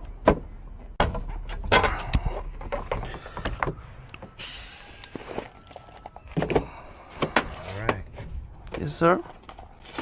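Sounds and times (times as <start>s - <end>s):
hiss: 4.4s - 5.2s.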